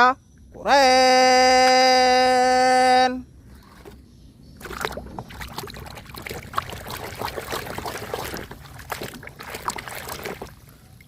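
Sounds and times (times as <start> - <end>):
water splashing in a tub: 4.6 - 11.0.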